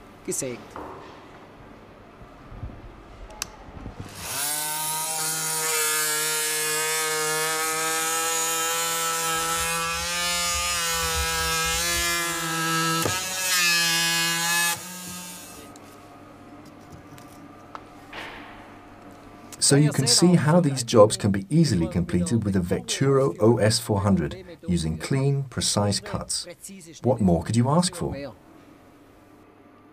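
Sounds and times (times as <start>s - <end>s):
oscillating multitool sawing: 4.1s - 15.8s.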